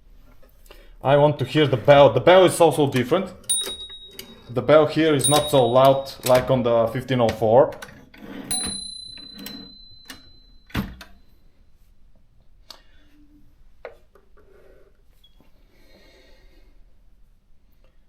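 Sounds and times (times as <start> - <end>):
typewriter bell ringing: 3.5 - 7.0, 8.4 - 11.2.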